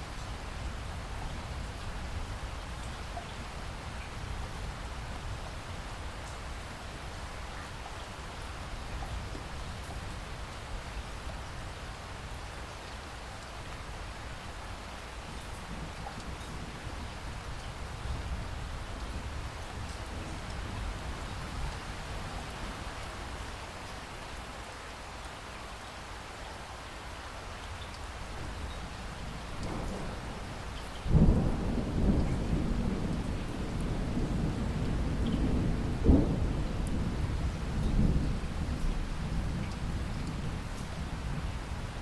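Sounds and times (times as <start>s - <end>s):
steady rain: 0.0s - 42.0s
thunder rumbling: 29.6s - 42.0s.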